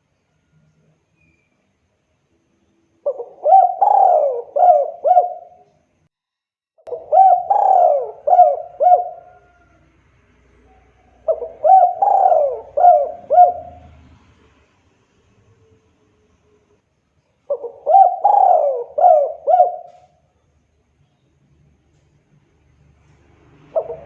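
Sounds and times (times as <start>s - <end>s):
dove cooing: 3.0s - 5.7s, 6.9s - 9.9s, 10.6s - 14.0s, 17.5s - 20.2s, 23.7s - 24.0s.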